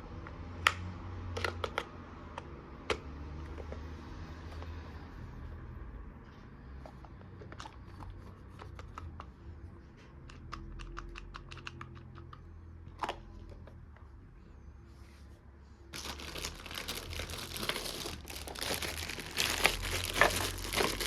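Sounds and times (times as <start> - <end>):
plastic toys clicking and tapping: 0.6 - 3.0, 7.1 - 9.4, 10.2 - 13.8.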